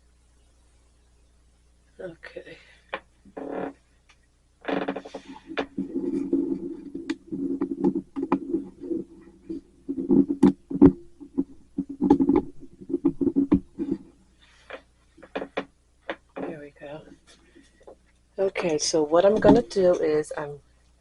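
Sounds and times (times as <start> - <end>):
handling noise rubbing: 4.6 - 20.2
sharp clicks and taps: 5.5 - 14.0.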